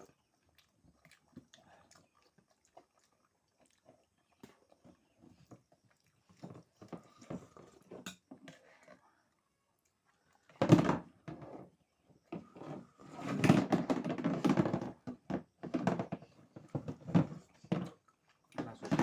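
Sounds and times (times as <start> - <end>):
soft chewing and clicks: 0.0 - 10.6.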